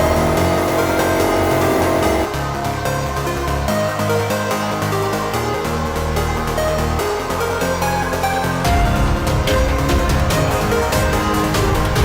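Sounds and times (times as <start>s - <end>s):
electronic dance music: 0.0s - 2.3s.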